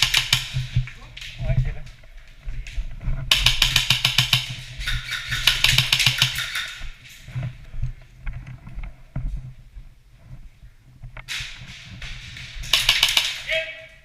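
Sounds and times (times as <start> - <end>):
airsoft gun firing: 0.0 - 0.8, 3.3 - 4.6, 5.4 - 6.7, 11.4 - 13.5.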